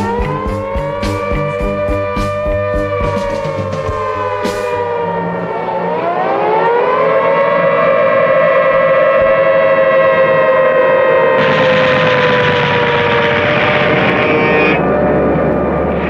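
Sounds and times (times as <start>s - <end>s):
rushing noise: 0.0s - 7.1s
air-raid siren wailing: 0.0s - 16.0s.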